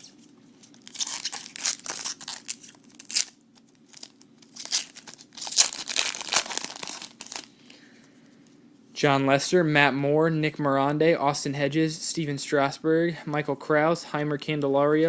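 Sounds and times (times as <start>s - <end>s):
foil wrapper tearing and crinkling: 0.7s - 7.5s.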